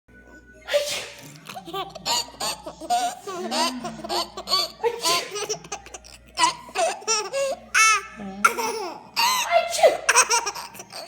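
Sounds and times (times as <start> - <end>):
fake sneeze: 0.6 - 1.4
child laughing: 1.6 - 7.4, 10.1 - 11.0.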